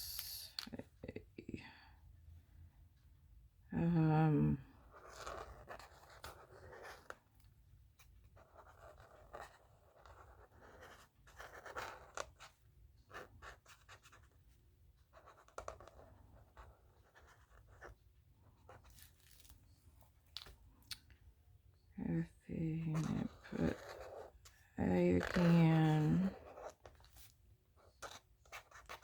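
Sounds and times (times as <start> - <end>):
pen scratching on paper: 4.8 - 7.3, 8.0 - 14.4, 15.1 - 19.2, 22.7 - 29.0.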